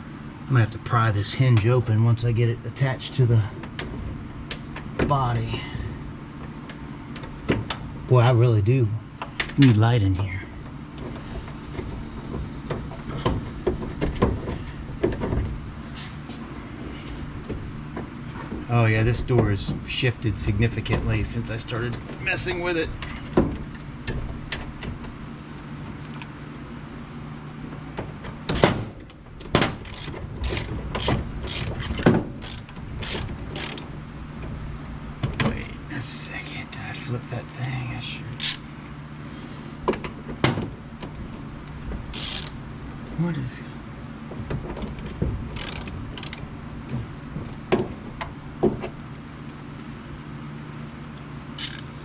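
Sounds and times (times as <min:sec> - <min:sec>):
ratchet wrench clicking: 0:29.8 - 0:33.9, 0:38.4 - 0:38.6, 0:42.1 - 0:42.6, 0:45.6 - 0:46.4, 0:51.6 - 0:51.9.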